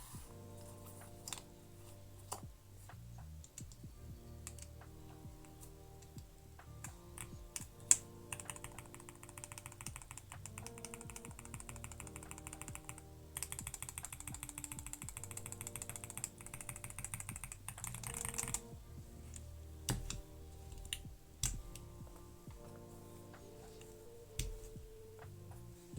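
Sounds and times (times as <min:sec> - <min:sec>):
mechanical keyboard typing: 0:06.8 - 0:18.8.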